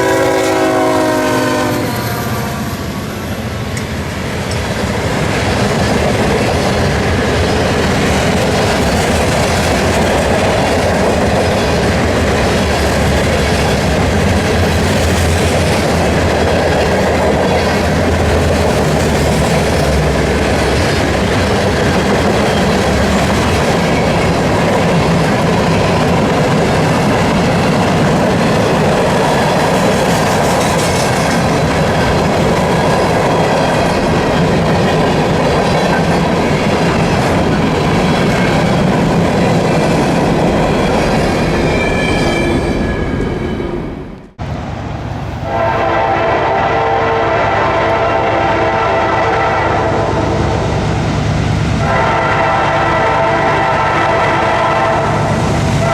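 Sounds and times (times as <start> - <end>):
train wheels rolling on rail: 0.0 - 55.9.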